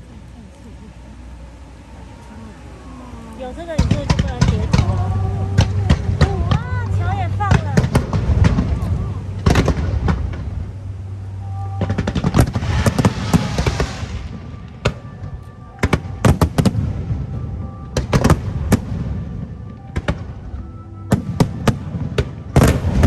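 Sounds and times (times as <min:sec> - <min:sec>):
fireworks bangs: 0:03.5 - 0:10.8, 0:11.8 - 0:20.5, 0:21.1 - 0:23.0
crackling shower of sparks: 0:11.8 - 0:17.1, 0:21.2 - 0:23.0.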